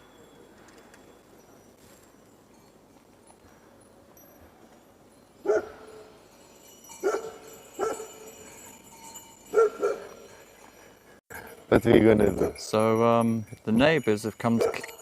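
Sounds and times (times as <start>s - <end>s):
dog barking: 5.5s - 6.0s, 7.0s - 8.1s, 9.5s - 10.1s, 14.6s - 14.9s.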